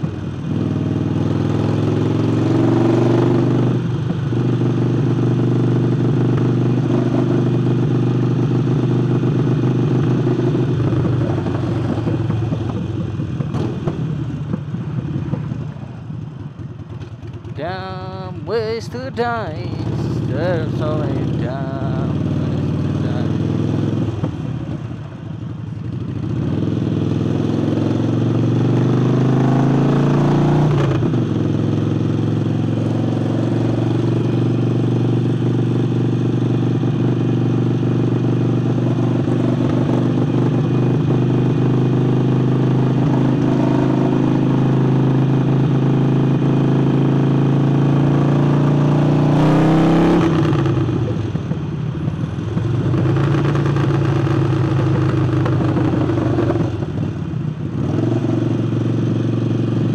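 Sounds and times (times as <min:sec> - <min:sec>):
motorcycle engine revving: 0:00.0 - 0:18.4, 0:19.4 - 0:51.6, 0:52.4 - 0:59.9.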